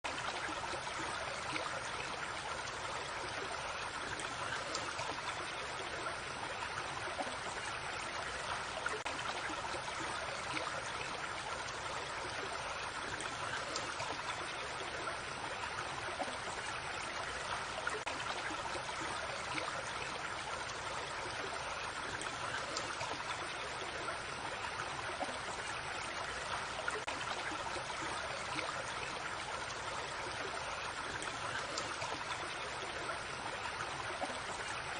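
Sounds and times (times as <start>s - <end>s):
creek trickling over stones: 0.0s - 34.9s.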